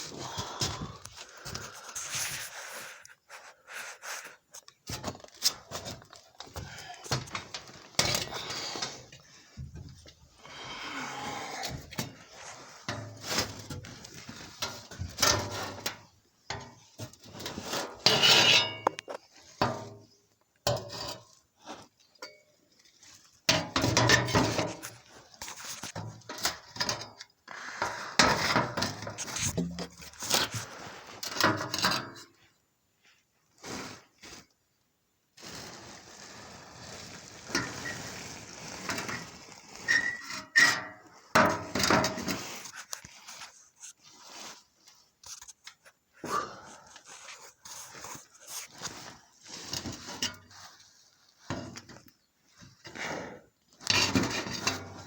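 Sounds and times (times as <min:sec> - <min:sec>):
metal clanking and scraping: 0:17.4 - 0:19.9, 0:28.2 - 0:30.6.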